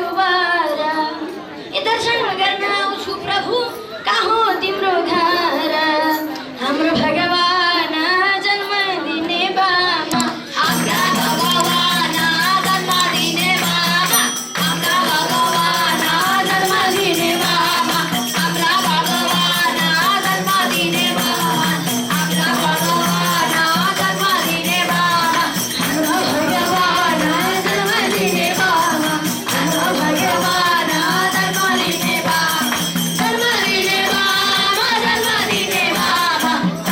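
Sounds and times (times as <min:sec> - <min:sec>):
group singing devotional song: 0:04.8 - 0:36.9
percussion beat: 0:10.1 - 0:36.9.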